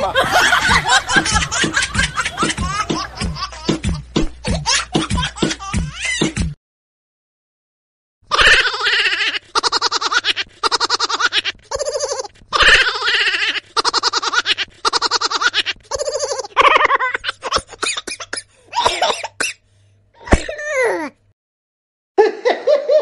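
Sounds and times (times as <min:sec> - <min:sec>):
laugh sliding down in pitch: 0:00.0 - 0:03.6
pulsing cut-up laughter: 0:00.0 - 0:06.4, 0:08.3 - 0:18.1.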